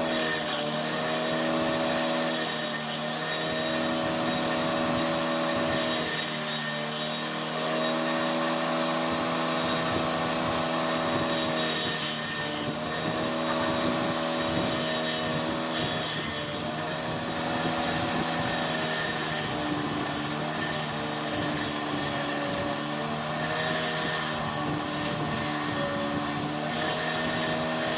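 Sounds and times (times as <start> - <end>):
power drill saw cutting wood: 0.0 - 27.9.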